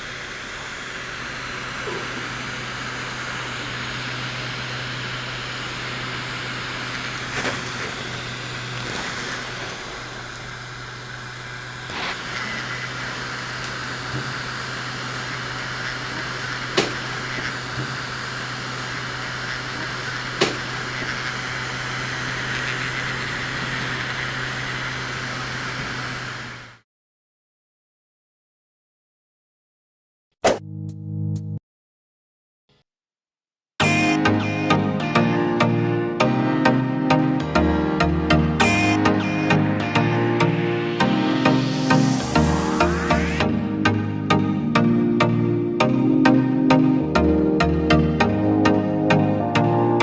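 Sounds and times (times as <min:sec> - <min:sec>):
electric fan motor humming: 0:00.0 - 0:26.8, 0:33.9 - 0:50.0
sharp clicks: 0:15.0 - 0:18.0, 0:18.9 - 0:21.4.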